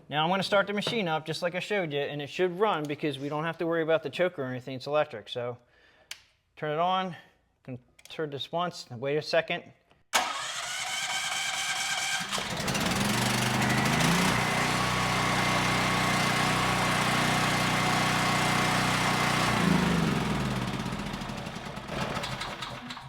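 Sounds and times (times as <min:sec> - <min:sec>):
generator engine running: 0:10.2 - 0:23.0
generator starter cranking: 0:10.2 - 0:23.0.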